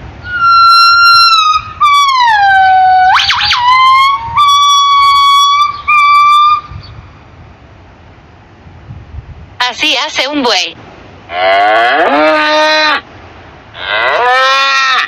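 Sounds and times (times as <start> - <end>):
gibbon whistling hoots: 0.2 - 6.9.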